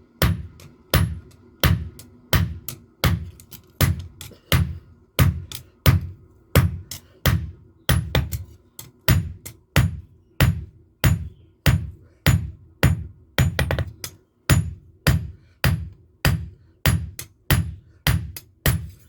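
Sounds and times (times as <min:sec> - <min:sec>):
hammer striking steel on anvil: 0:00.2 - 0:19.0.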